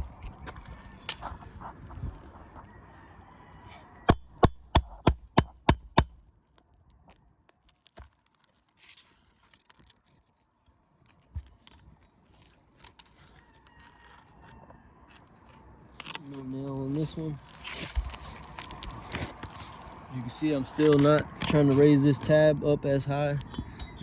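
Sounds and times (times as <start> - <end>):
hammer striking metal tool: 4.1 - 6.2
faint scrapes and clicks: 7.0 - 21.9.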